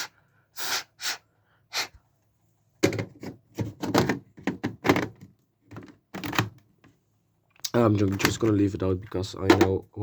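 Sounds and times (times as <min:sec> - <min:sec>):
puffs of breath blown: 0:00.0 - 0:02.1
plastic clicks and knocks: 0:02.8 - 0:07.0, 0:08.0 - 0:09.8.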